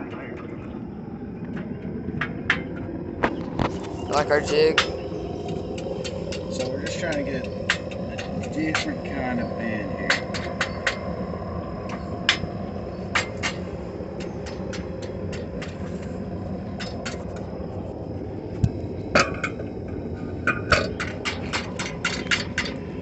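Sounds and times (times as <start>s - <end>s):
low rumble: 0.0s - 23.0s.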